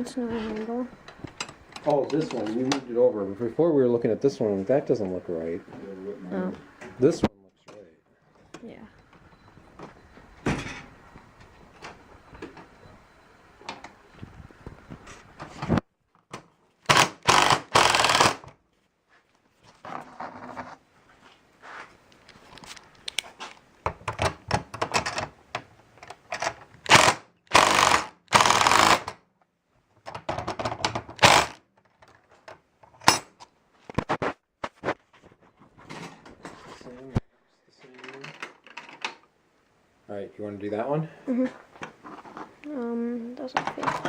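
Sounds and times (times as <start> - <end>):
power drill running: 16.9 - 18.5, 26.9 - 29.2, 31.2 - 31.6.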